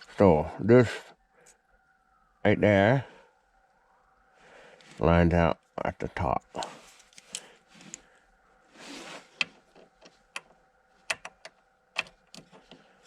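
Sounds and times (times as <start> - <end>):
metal scrape: 8.7 - 9.4
sharp small clicks: 9.4 - 12.8.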